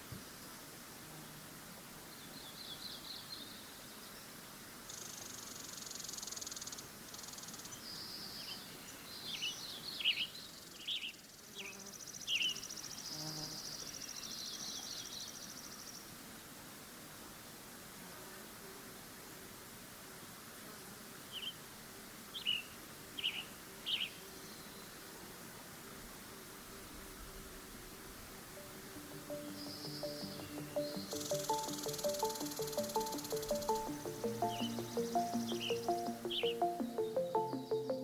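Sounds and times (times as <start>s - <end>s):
faint outdoor ambience: 0.0s - 38.0s
birds singing trills: 22.4s - 24.9s, 28.6s - 38.0s
quick downward chirps: 28.6s - 38.0s.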